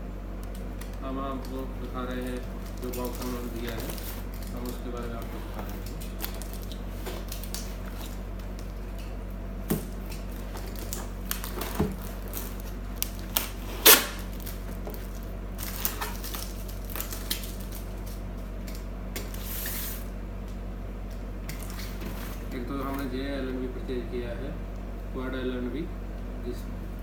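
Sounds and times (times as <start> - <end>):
steady low hum: 0.0 - 27.0
packaging rustling and clicking: 0.4 - 9.1, 9.8 - 19.8.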